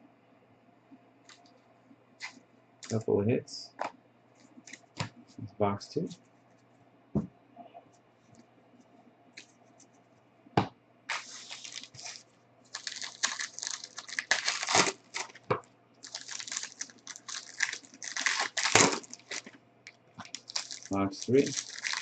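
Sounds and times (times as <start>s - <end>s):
plastic wrapping crinkling and tearing: 11.1s - 19.6s, 20.2s - 22.0s.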